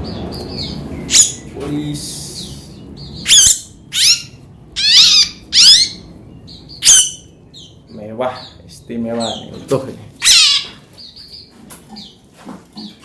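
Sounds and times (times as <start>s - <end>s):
bird giving harsh squawks: 3.2s - 6.0s, 10.2s - 10.8s.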